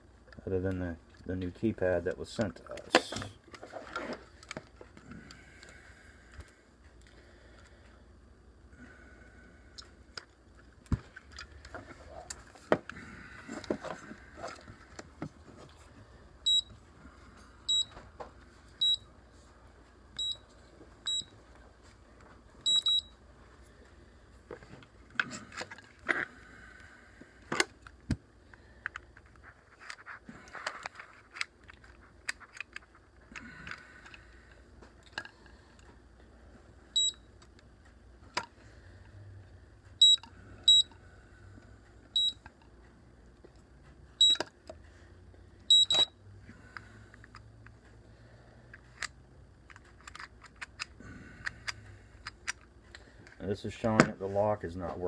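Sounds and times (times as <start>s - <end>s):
keypad short high beeps: 45.7s - 46.1s.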